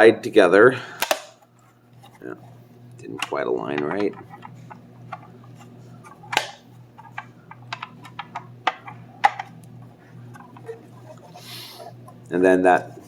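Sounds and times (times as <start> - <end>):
hard plastic parts clicking: 1.0 - 1.4, 6.3 - 9.5.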